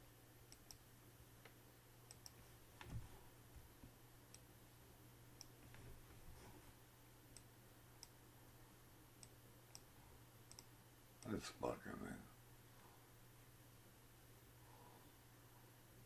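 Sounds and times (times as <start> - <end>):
low steady hum: 0.0 - 16.0
computer mouse clicks: 0.5 - 0.8, 1.4 - 2.9, 5.4 - 5.8, 7.3 - 8.2, 9.2 - 9.9, 10.5 - 11.4.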